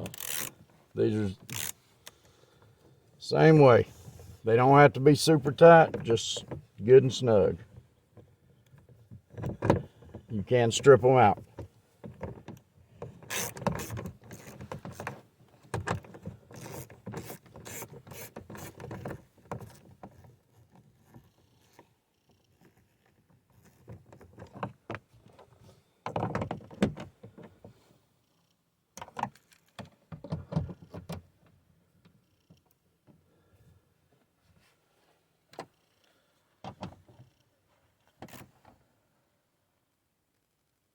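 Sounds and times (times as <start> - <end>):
hand ratchet clicking: 0.0 - 0.5, 1.4 - 1.8, 13.3 - 14.5.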